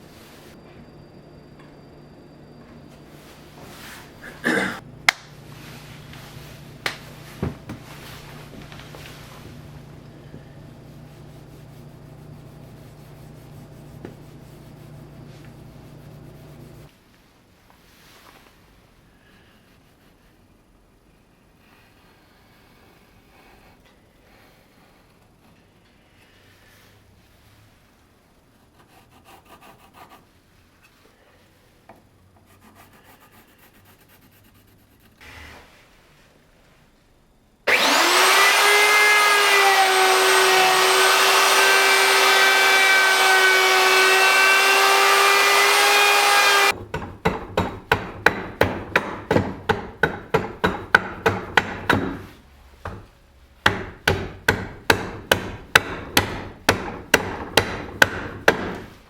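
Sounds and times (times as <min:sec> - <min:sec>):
hand saw on wood: 0:28.8 - 0:30.2, 0:37.7 - 0:46.7
power tool humming: 0:37.7 - 0:46.7.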